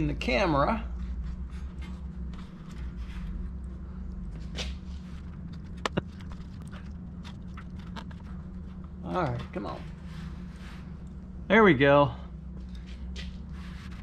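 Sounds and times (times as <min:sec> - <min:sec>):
steady low hum: 0:00.0 - 0:14.0
seal scraping and rustling: 0:04.4 - 0:11.3, 0:12.8 - 0:14.0.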